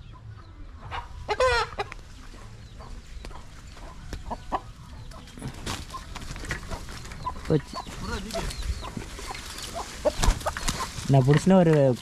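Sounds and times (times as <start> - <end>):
chickens clucking: 0.0 - 12.0
chicken squawking: 1.0 - 1.9.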